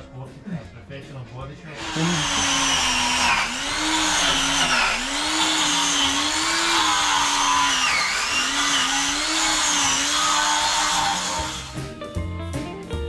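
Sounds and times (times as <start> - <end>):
power tool whining: 1.8 - 12.0.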